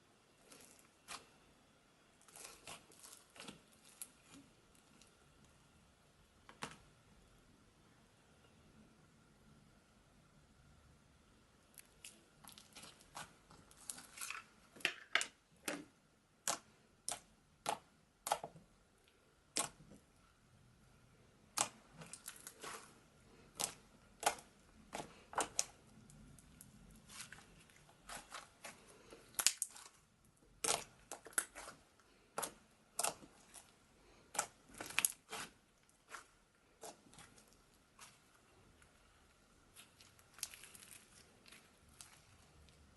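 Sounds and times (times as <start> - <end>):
slime popping and crackling: 21.5 - 22.9, 23.5 - 30.0, 30.6 - 31.8, 34.3 - 38.2, 39.7 - 42.8.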